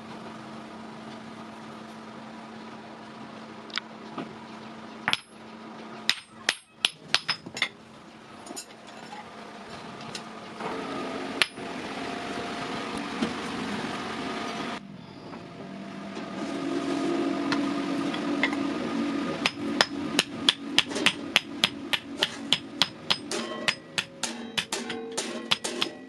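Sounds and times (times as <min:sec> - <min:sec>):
hammer striking steel: 0:05.1 - 0:05.4, 0:06.1 - 0:07.7, 0:11.4 - 0:11.6, 0:19.4 - 0:26.0
machine hum: 0:09.3 - 0:26.0.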